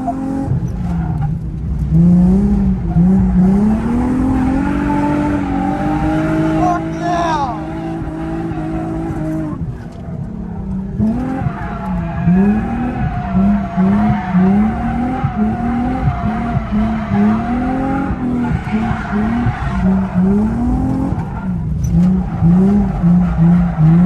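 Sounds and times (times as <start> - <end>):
car engine revving: 0.0 - 24.0
tyre squeal: 11.0 - 24.0.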